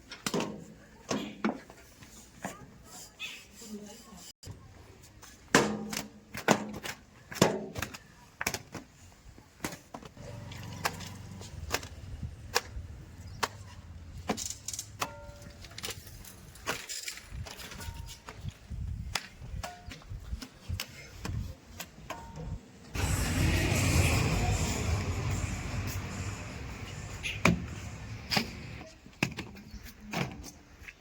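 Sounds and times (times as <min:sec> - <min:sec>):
diesel engine drone: 0:23.0 - 0:28.8.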